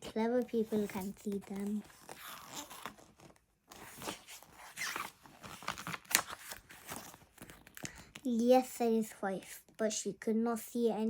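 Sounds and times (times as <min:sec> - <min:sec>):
book pages rustling and turning: 0:00.0 - 0:08.7.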